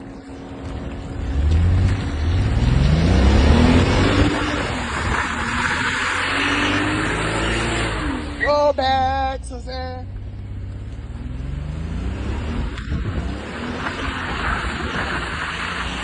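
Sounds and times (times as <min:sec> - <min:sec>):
car engine revving: 0:00.0 - 0:16.0
tyres spinning on wet pavement: 0:00.4 - 0:08.4, 0:11.7 - 0:16.0.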